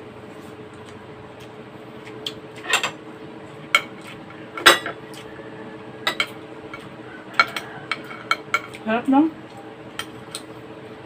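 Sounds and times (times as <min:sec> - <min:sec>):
faint hum: 0:00.0 - 0:11.0
cutlery clinking on plates: 0:03.7 - 0:05.3, 0:06.0 - 0:08.8.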